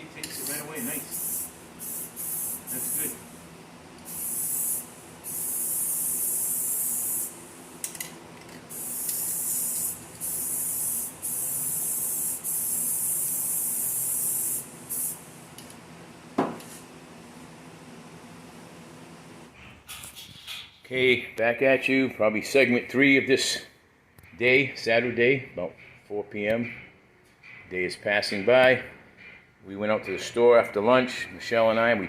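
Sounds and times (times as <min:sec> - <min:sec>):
aerosol can spraying: 0:00.4 - 0:03.2, 0:04.0 - 0:07.8, 0:08.7 - 0:15.2.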